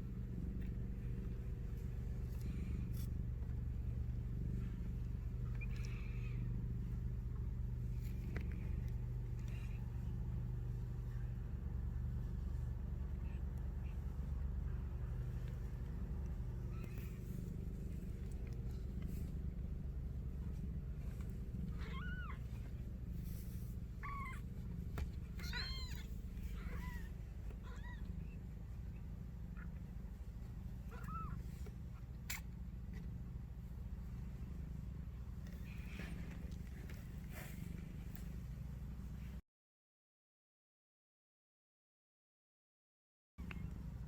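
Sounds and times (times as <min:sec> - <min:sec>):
steady low hum: 0:00.0 - 0:39.4
kitten mewing: 0:21.6 - 0:22.6, 0:24.0 - 0:24.5, 0:25.4 - 0:28.1, 0:30.9 - 0:31.5.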